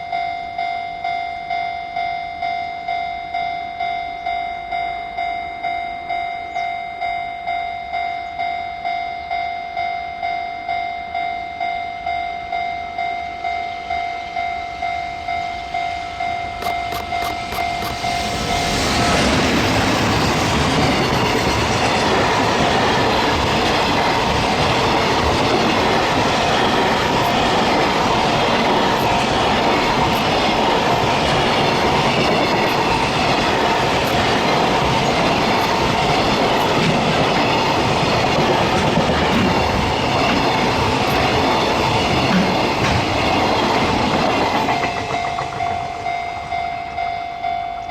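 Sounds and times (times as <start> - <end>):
freight train wheels on rail: 0.0 - 47.9
level crossing warning bell: 0.0 - 47.9
wheels clacking over rail joints: 16.6 - 46.6.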